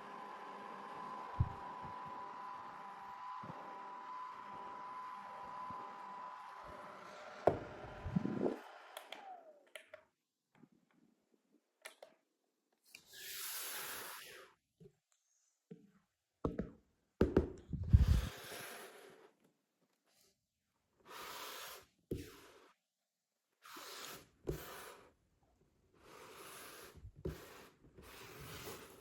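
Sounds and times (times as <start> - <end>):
fan motor hum: 0.0 - 9.5.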